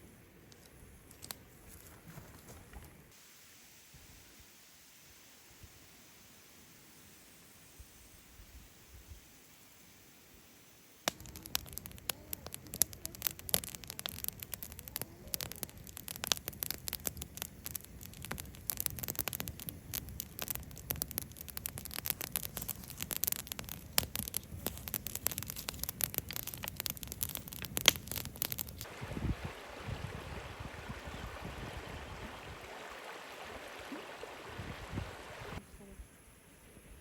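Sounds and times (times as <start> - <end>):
campfire crackling and popping: 0.5 - 3.2, 11.0 - 35.6.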